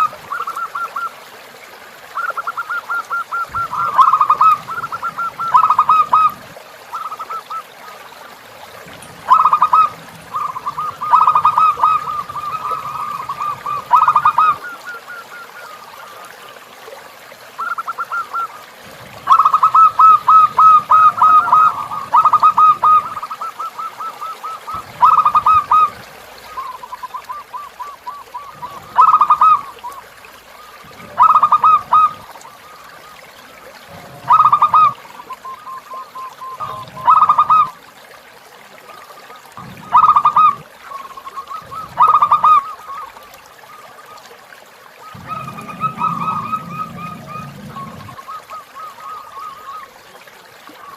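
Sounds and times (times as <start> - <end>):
river trickling: 0.0 - 50.9
dove cooing: 2.2 - 7.7, 8.8 - 16.2, 17.6 - 37.8, 39.5 - 43.2, 45.0 - 50.0.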